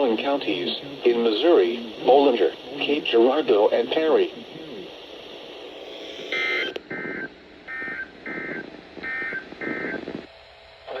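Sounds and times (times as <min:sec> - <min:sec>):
radio static: 0:00.0 - 0:11.0
raspy two-tone digital bursts: 0:06.3 - 0:10.0.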